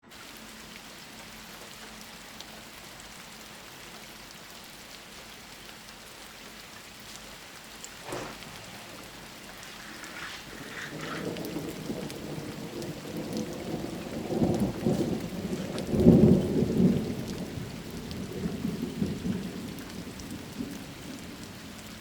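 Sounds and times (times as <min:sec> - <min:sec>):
rain hissing: 0:00.0 - 0:22.0
thunder rumbling: 0:07.9 - 0:21.6.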